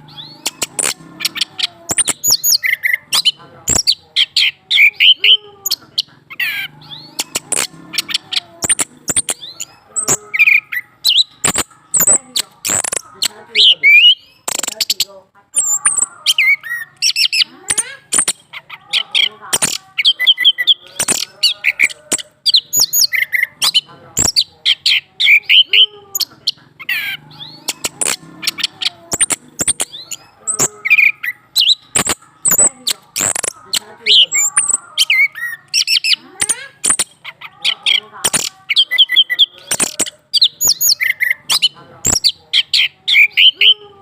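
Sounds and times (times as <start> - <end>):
sharp clicks: 0.3 - 2.6, 7.0 - 10.2, 11.1 - 13.4, 14.4 - 16.1, 17.0 - 18.5, 19.5 - 22.3, 23.6 - 24.5, 27.6 - 30.8, 31.6 - 34.8, 35.7 - 37.2, 38.2 - 40.8, 41.5 - 42.3.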